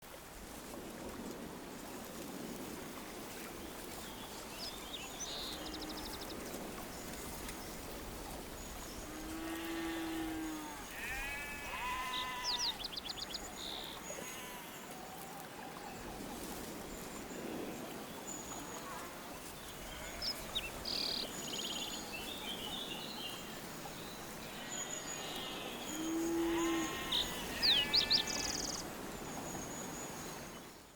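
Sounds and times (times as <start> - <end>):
sheep bleating: 9.4 - 12.8, 14.2 - 14.8.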